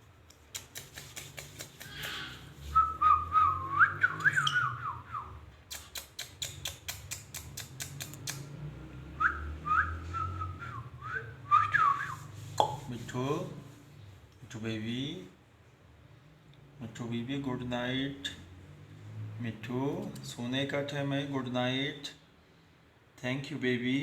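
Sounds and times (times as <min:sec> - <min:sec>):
parrot whistling: 0:02.8 - 0:05.3.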